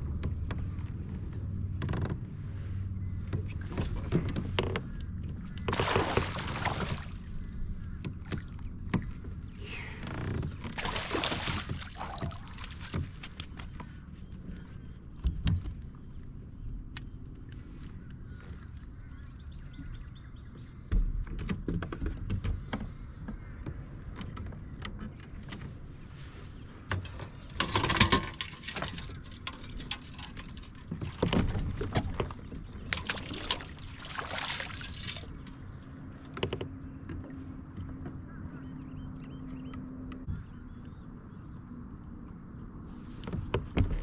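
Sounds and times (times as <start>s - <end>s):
gear being handled on a kayak: 11.6s - 18.8s, 42.7s - 44.0s.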